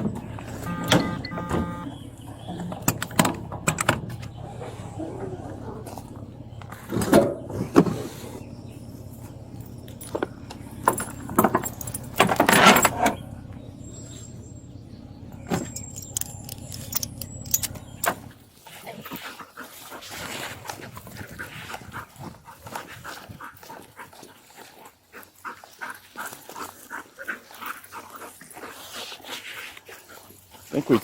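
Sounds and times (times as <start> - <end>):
vehicle engine idling: 0.0 - 18.6
dog panting: 18.6 - 30.8.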